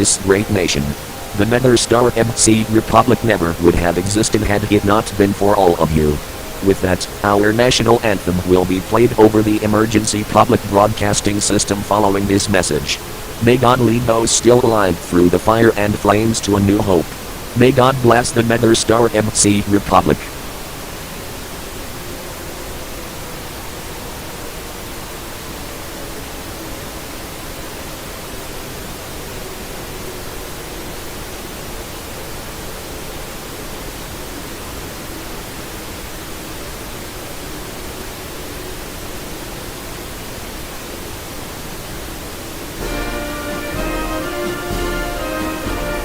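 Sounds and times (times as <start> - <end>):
faint wavering hum tones: 0.0 - 18.2
anthem music: 0.0 - 20.2, 42.8 - 46.0
broadcast static hiss: 0.0 - 46.0.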